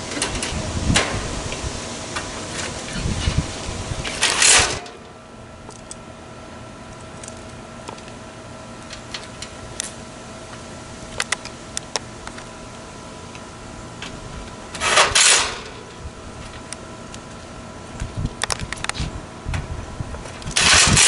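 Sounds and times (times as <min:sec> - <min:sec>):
loud hiss: 0:00.0 - 0:05.0
machine hum: 0:00.0 - 0:21.0.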